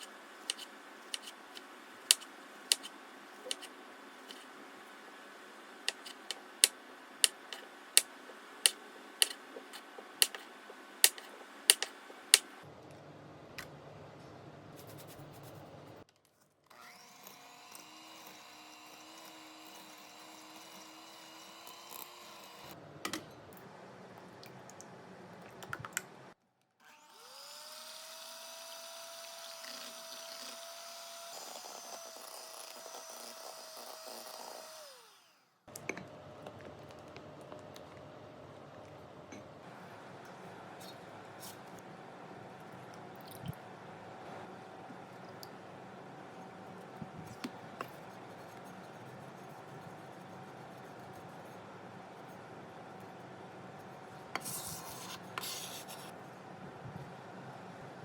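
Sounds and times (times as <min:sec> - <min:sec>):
small kitchen motor running: 0:16.7 - 0:24.6, 0:26.8 - 0:38.9.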